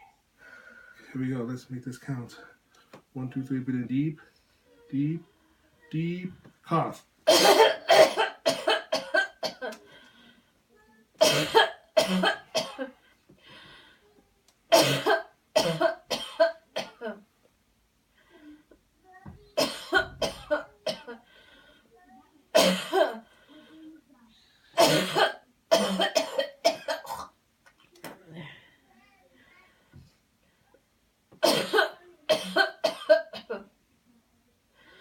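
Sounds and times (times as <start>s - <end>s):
person coughing: 7.3s - 9.8s, 11.2s - 12.9s, 14.7s - 17.2s, 22.6s - 23.2s, 24.8s - 27.3s, 31.4s - 33.7s
person taking deep breath: 13.4s - 14.0s.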